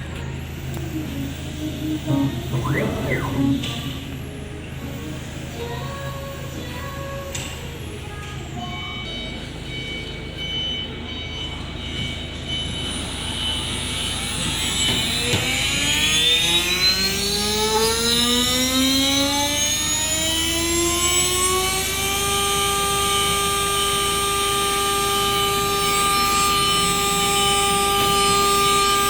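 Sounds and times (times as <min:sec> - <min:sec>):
spindle motor whine: 0:00.6 - 0:04.5.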